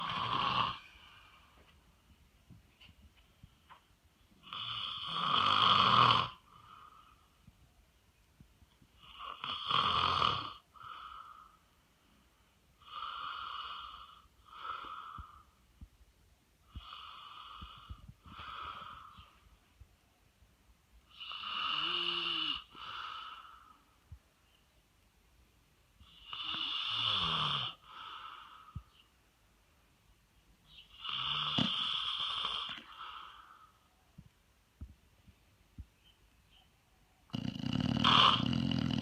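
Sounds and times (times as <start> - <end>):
person snoring: 0.0 - 1.1, 21.2 - 23.8, 37.3 - 39.0.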